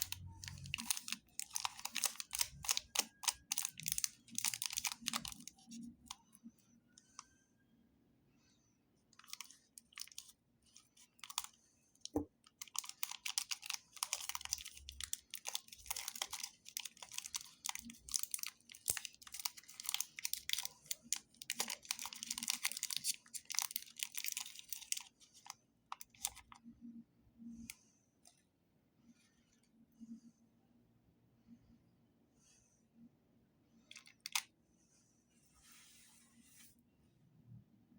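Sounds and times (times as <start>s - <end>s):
plastic wrappers crinkling: 0.0s - 6.2s, 9.2s - 26.6s.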